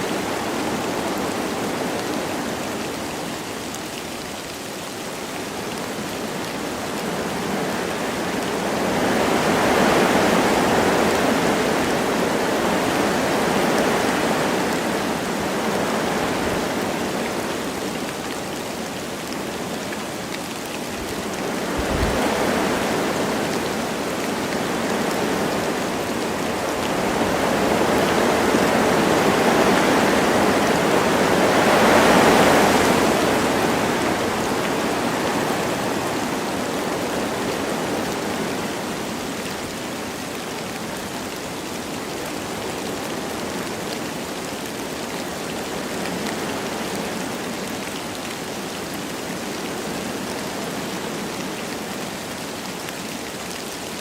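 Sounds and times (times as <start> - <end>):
light rain: 0.0 - 54.0
wind through trees: 0.0 - 54.0.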